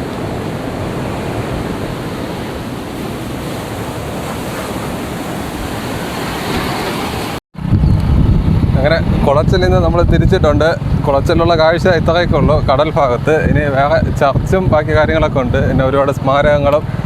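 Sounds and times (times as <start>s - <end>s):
sea surf rushing: 0.0s - 7.7s
wind buffeting microphone: 0.0s - 17.0s.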